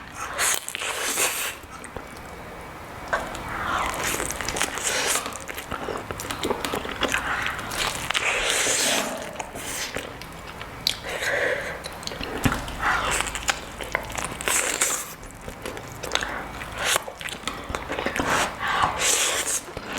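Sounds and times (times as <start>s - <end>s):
crunchy biting and chewing: 3.1s - 19.9s.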